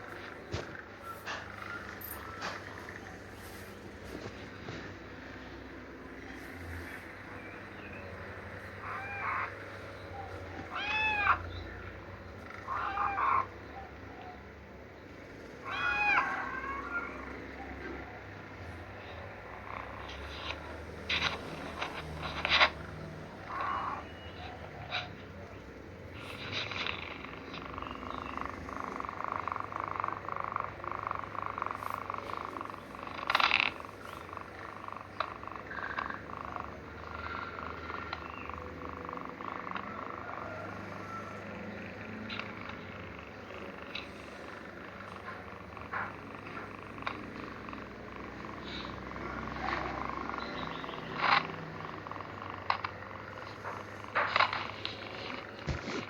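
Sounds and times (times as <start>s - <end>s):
kitten mewing: 6.2s - 11.7s, 15.5s - 25.5s.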